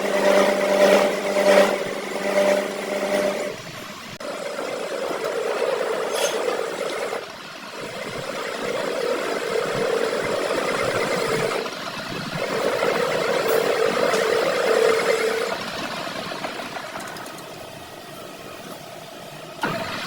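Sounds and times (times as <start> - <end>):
machine running: 0.0 - 20.0.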